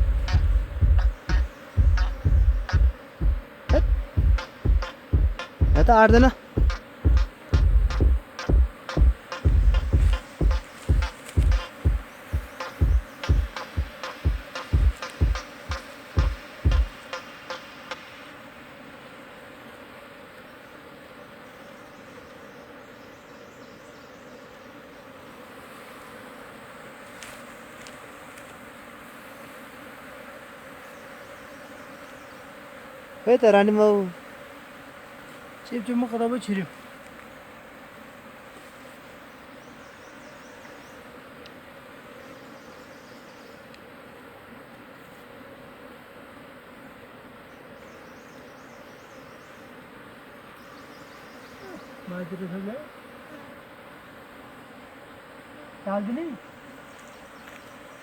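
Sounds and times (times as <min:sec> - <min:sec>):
bees buzzing: 0:00.0 - 0:58.0.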